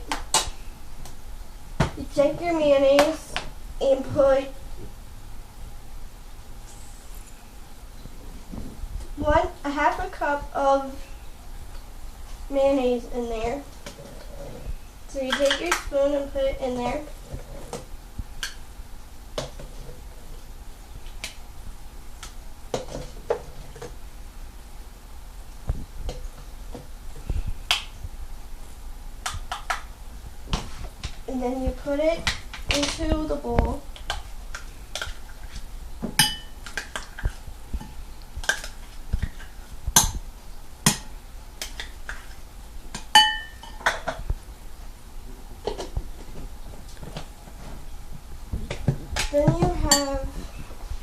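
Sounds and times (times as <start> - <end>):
spoon clinking against bowl: 36.2 - 36.6, 43.2 - 44.0.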